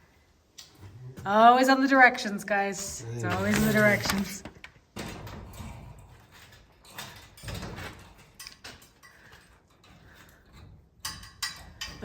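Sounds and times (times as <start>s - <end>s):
garage door hardware rattling: 3.3s - 12.0s.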